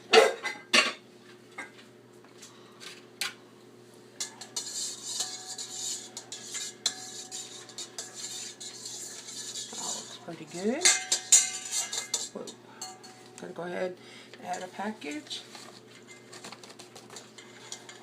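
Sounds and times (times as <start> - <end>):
utensil stirring in a bowl: 4.2 - 13.3, 14.5 - 18.0.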